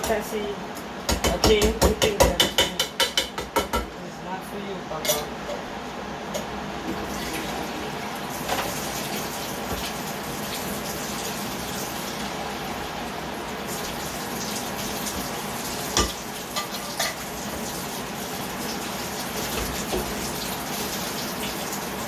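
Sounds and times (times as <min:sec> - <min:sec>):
kitchen tap running: 0:06.3 - 0:22.0.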